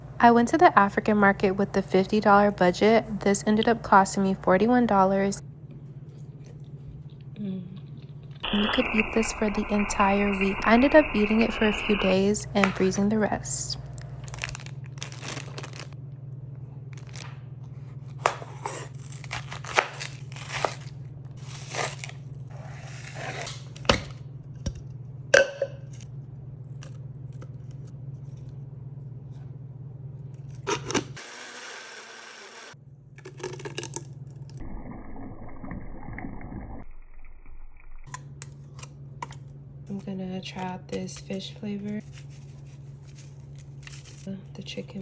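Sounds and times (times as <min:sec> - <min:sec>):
steady low hum: 0:00.0 - 0:31.2.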